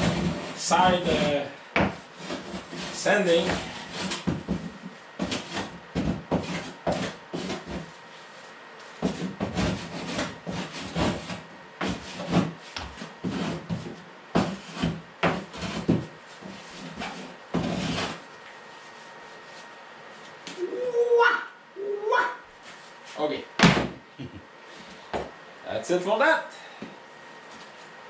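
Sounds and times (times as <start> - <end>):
hand sanding strokes: 0.0 - 4.6, 6.3 - 20.4.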